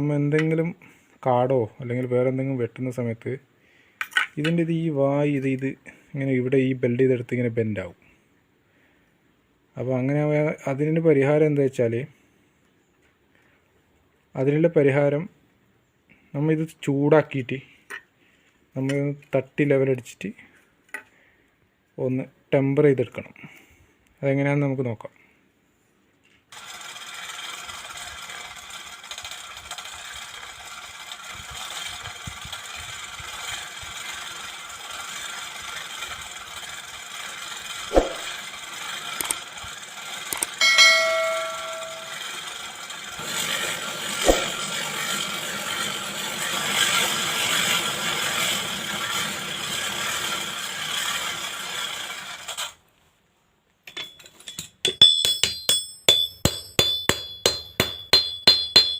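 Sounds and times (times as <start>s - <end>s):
ringing metallic clang: 40.6s - 42.2s, 53.9s - 58.9s
sharp metal knocks: 40.6s - 42.2s, 53.9s - 58.9s.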